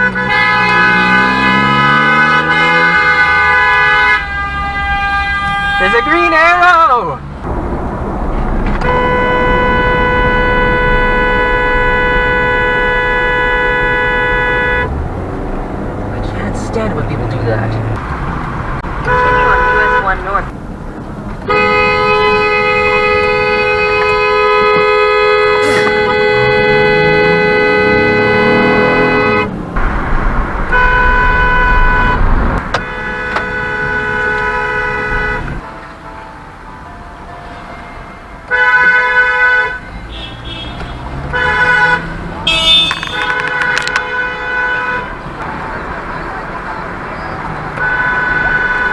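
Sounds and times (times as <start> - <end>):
car horn blast: 0.0 - 6.6, 8.8 - 15.0, 19.0 - 20.4, 21.4 - 29.9, 30.7 - 35.6, 38.5 - 45.2, 47.7 - 48.9
traffic noise: 0.0 - 48.9.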